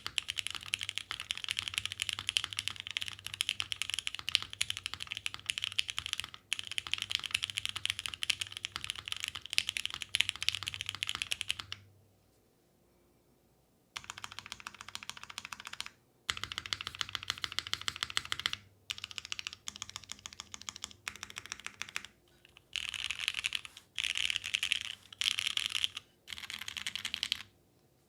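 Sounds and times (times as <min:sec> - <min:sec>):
typing on mechanical keyboard: 0:00.0 - 0:11.9, 0:14.0 - 0:27.5.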